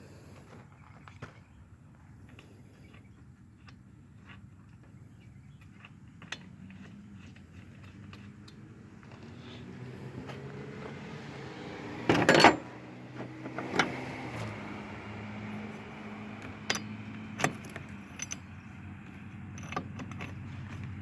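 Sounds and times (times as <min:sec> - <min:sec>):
metal tools clinking: 0:12.1 - 0:13.9, 0:16.4 - 0:21.0.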